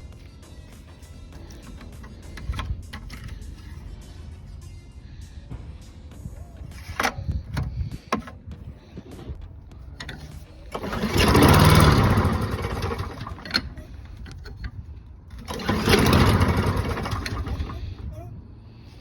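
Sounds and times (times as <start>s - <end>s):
lawn mower engine starting and dying: 0.9s - 3.9s, 9.9s - 18.1s.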